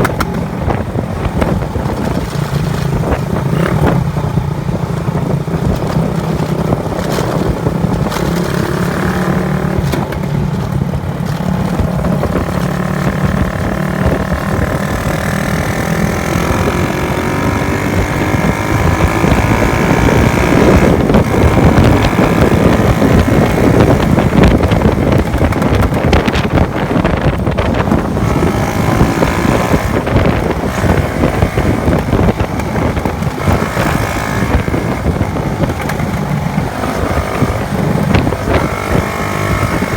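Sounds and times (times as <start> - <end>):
motorcycle engine accelerating: 0.0 - 39.9
wind and road noise: 0.0 - 39.9.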